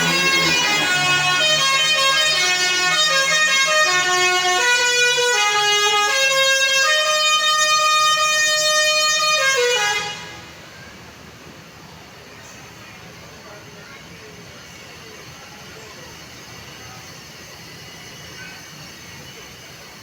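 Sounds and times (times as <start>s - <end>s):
bus horn playing melody: 0.0s - 10.8s.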